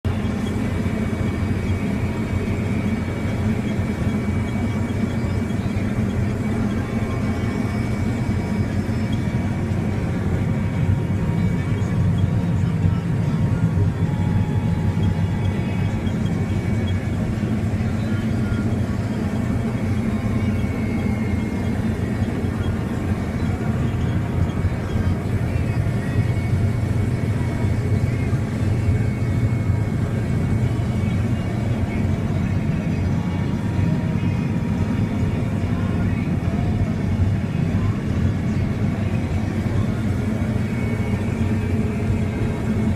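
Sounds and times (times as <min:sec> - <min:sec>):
machinery engine drone: 0:00.0 - 0:42.9.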